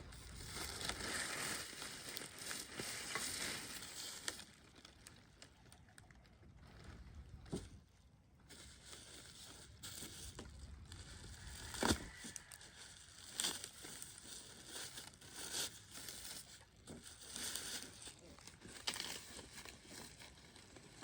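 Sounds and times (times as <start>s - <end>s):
packaging crinkling and rustling: 0.1s - 7.7s, 8.5s - 21.0s.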